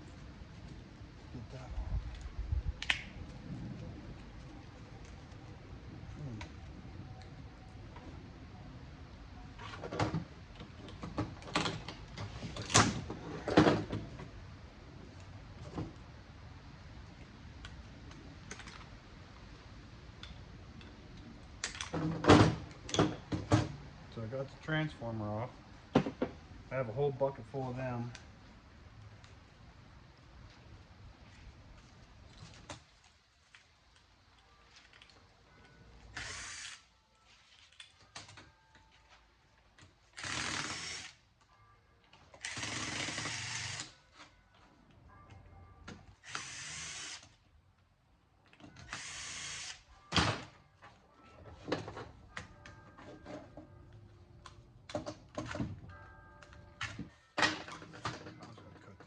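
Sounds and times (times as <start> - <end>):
power drill running: 40.2 - 41.1, 46.2 - 47.2.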